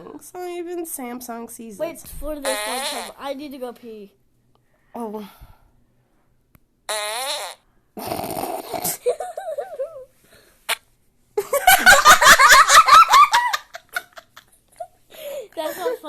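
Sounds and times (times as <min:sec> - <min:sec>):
fart sound effects from phone: 0:02.4 - 0:03.2, 0:06.9 - 0:09.0.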